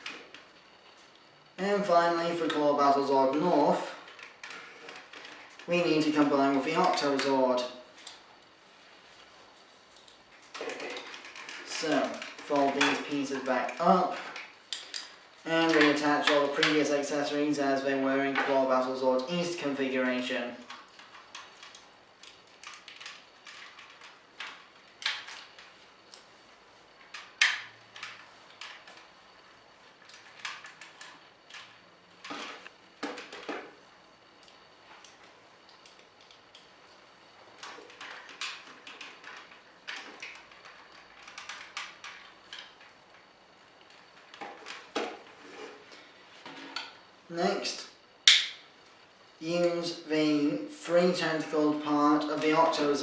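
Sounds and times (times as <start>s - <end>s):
plastic toy parts clicking: 20.7s - 26.2s, 30.0s - 33.5s, 37.6s - 42.9s.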